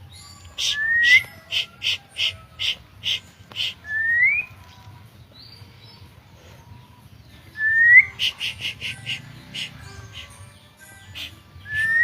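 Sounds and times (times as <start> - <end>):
bird singing chips and whistles: 0.1 - 4.6, 7.6 - 10.4, 11.0 - 12.0.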